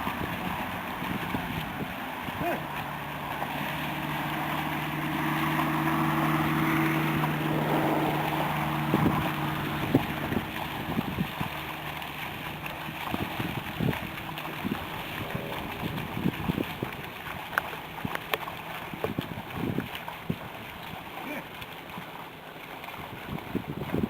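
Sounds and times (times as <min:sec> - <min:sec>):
wind noise on microphone: 0:00.0 - 0:02.4, 0:05.3 - 0:21.0, 0:22.9 - 0:24.0
motor engine humming: 0:00.0 - 0:24.0.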